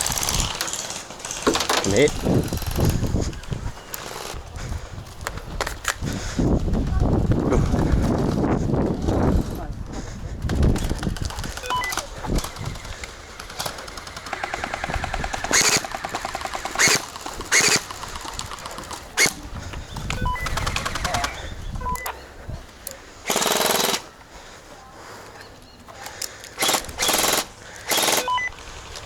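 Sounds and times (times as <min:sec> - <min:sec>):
gel blasters firing full-auto: 0:13.4 - 0:17.9.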